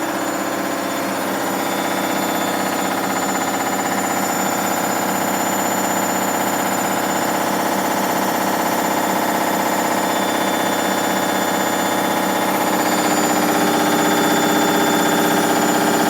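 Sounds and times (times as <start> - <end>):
washing machine spinning noisily: 0.0 - 16.0.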